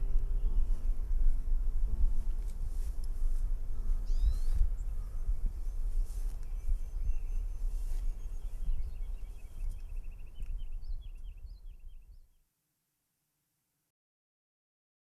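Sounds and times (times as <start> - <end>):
low rumble: 0.0 - 11.6
small birds chirping faintly: 0.0 - 12.5.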